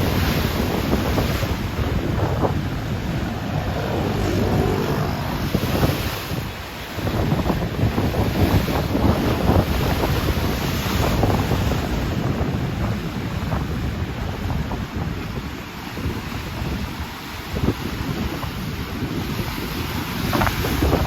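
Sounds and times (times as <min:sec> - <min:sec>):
ocean waves breaking: 0:00.0 - 0:06.6
wind buffeting microphone: 0:00.0 - 0:17.0.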